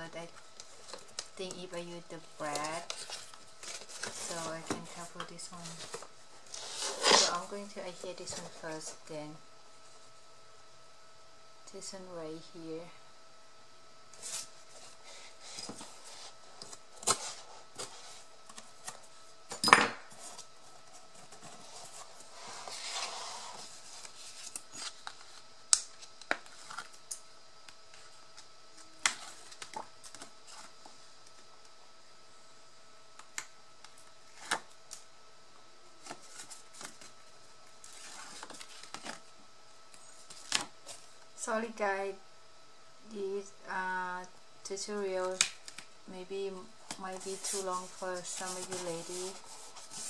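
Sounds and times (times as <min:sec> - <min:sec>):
paper rustling: 0:47.1 - 0:50.0.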